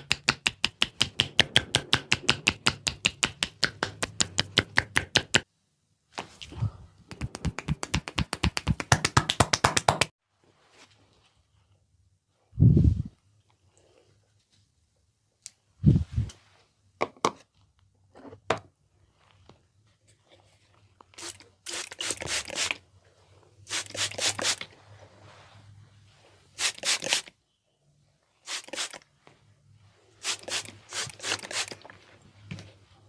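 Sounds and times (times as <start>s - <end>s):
fingers scratching hair: 7.1s - 10.1s, 23.7s - 24.7s, 30.2s - 31.9s.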